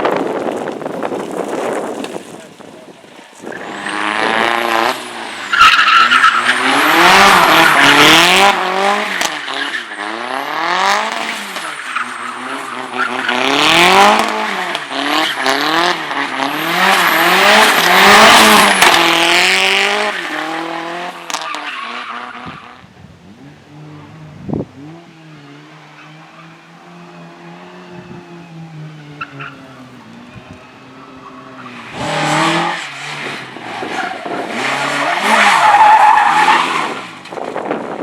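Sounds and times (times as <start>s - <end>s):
car engine revving: 3.4s - 38.0s
tyres squealing: 5.2s - 10.5s, 33.7s - 37.2s.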